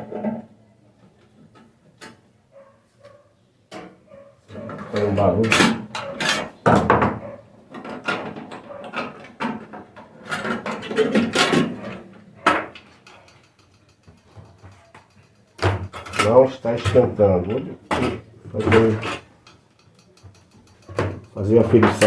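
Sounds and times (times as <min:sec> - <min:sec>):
metal parts knocking and scraping: 0:03.8 - 0:22.0
sharp clicks: 0:12.6 - 0:16.8, 0:19.4 - 0:22.0.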